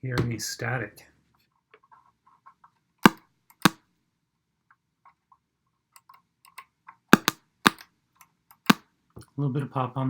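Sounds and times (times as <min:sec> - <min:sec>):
sharp pops: 0:03.0 - 0:03.8.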